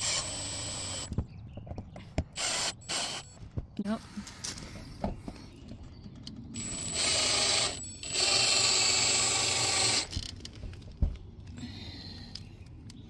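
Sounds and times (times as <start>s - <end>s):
power drill whining: 0.0s - 1.1s, 2.4s - 3.4s, 6.6s - 10.2s.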